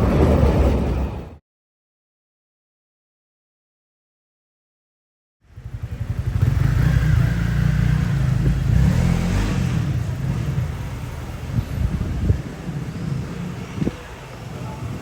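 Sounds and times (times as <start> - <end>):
loud low vehicle rumble: 5.5 - 15.0.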